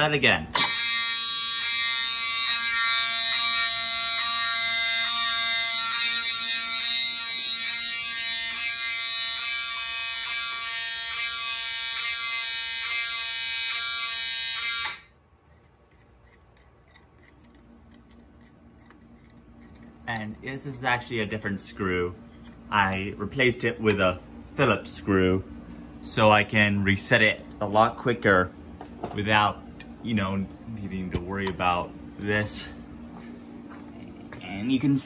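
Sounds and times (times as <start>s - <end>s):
pulsing fire alarm tones: 0.6s - 15.1s.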